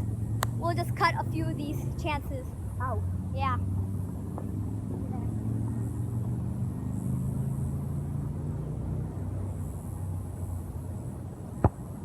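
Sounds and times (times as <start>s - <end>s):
low outdoor rumble: 0.0s - 12.0s
soccer ball kick thud: 11.6s - 12.0s.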